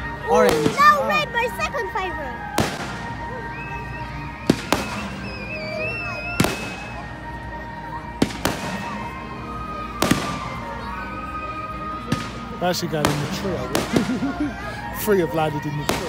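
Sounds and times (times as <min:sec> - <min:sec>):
fireworks bangs: 0:00.4 - 0:01.2, 0:02.6 - 0:03.1, 0:04.4 - 0:05.2, 0:06.4 - 0:07.0, 0:08.2 - 0:09.0, 0:10.0 - 0:10.5, 0:13.0 - 0:14.4.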